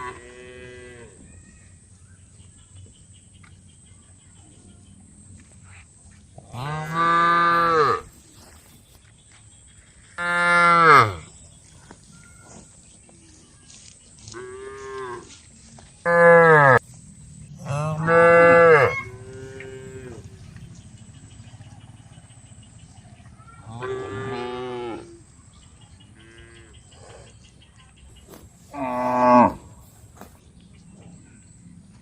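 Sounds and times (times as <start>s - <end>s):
cows mooing: 6.5s - 8.1s, 10.2s - 11.2s, 17.6s - 20.5s, 23.6s - 25.2s, 28.7s - 29.8s.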